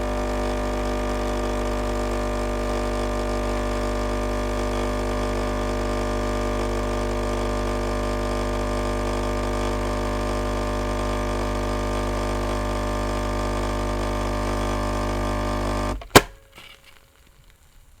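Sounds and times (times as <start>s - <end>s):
coffee machine pump humming: 0.0s - 16.3s
sharp click: 16.0s - 16.4s.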